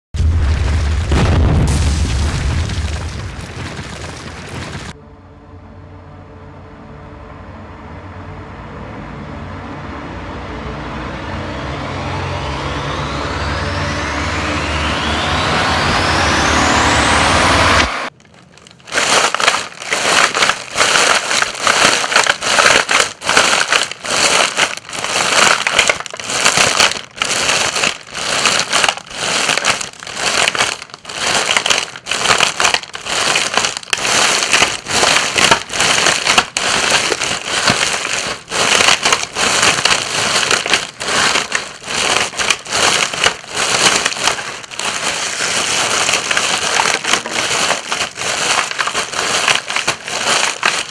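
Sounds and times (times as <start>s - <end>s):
rising whoosh: 9.5s - 18.1s
footsteps crunching through dry leaves: 17.4s - 50.9s.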